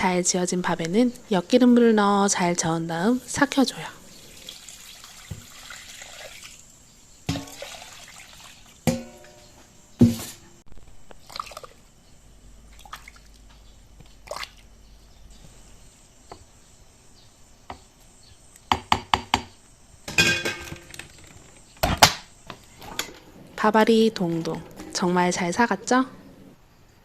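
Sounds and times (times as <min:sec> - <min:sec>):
liquid dripping and pouring: 0:04.1 - 0:06.7, 0:07.3 - 0:09.4.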